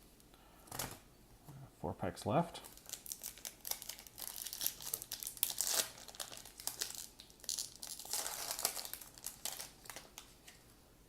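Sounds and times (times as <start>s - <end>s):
plastic wrapper being torn open: 2.6s - 10.6s.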